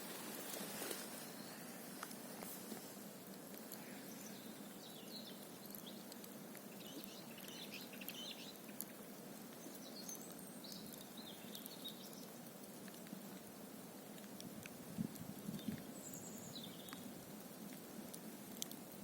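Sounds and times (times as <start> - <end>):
campfire crackling and popping: 0.0 - 19.0.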